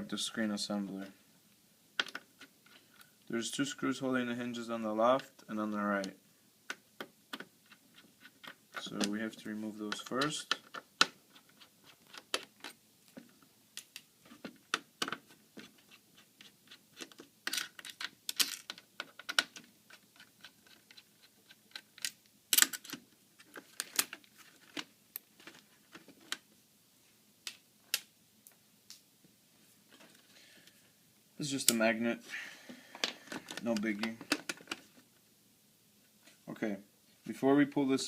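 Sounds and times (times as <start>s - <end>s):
plastic and metal parts handled: 6.7s - 26.5s, 32.9s - 35.1s.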